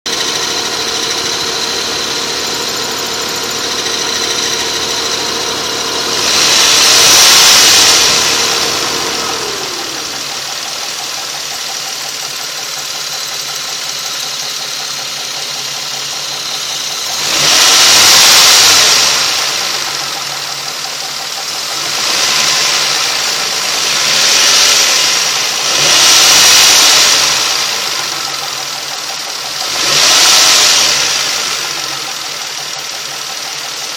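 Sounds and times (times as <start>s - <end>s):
car engine idling and revving: 0.0s - 33.9s.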